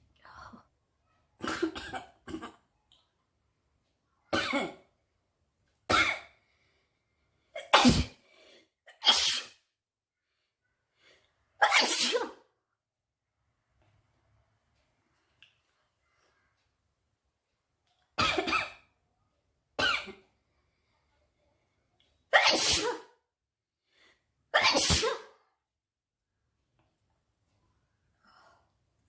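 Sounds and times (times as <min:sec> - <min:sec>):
person sneezing: 0:07.6 - 0:08.2, 0:11.6 - 0:12.5, 0:22.4 - 0:23.2, 0:24.6 - 0:25.4.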